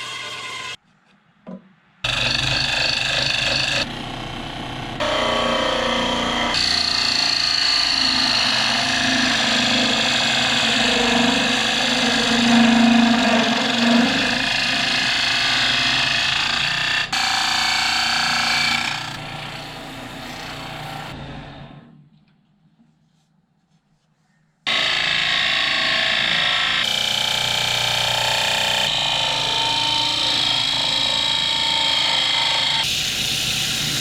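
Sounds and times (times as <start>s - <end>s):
lathe motor hum: 2.1s - 21.0s
wood cutting on lathe: 2.1s - 21.1s, 24.7s - 34.0s.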